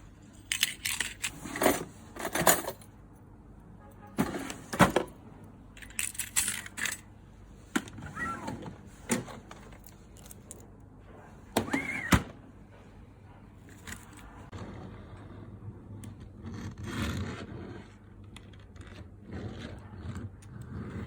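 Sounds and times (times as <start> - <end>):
keys jangling and clicking: 0.4 - 3.0, 5.8 - 7.1.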